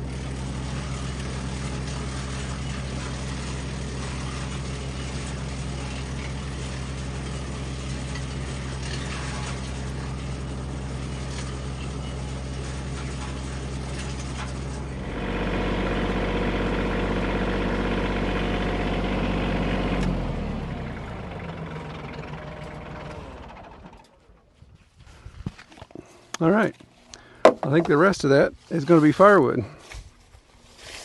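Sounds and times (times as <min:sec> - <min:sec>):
chipper flywheel spinning down: 0:00.0 - 0:24.5
tractor engine and wood chipper: 0:00.0 - 0:31.0.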